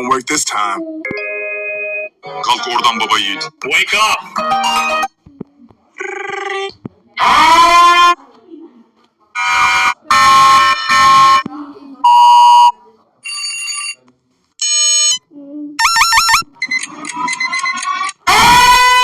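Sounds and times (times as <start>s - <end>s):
alarm beeps and buzzes: 9.4s - 11.5s, 15.8s - 17.8s.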